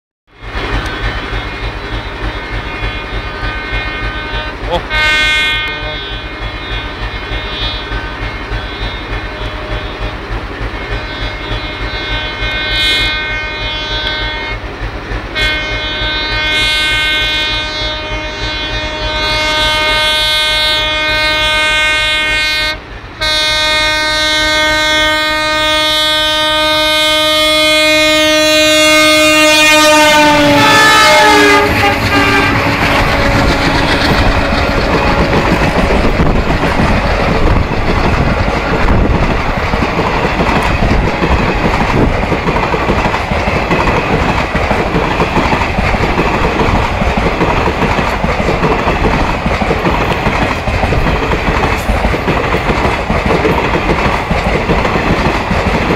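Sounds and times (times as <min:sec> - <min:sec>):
train coaches rumbling and clattering: 0:00.3 - 0:55.9
locomotive horn: 0:00.8 - 0:14.7, 0:15.3 - 0:39.2.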